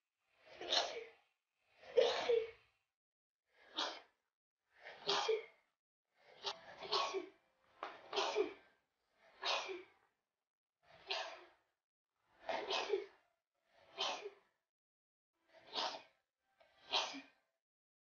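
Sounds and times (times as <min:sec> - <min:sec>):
girl sneezing: 0:02.0 - 0:02.5, 0:05.0 - 0:05.5, 0:08.2 - 0:08.6, 0:09.4 - 0:09.9, 0:12.6 - 0:13.1, 0:14.0 - 0:14.4.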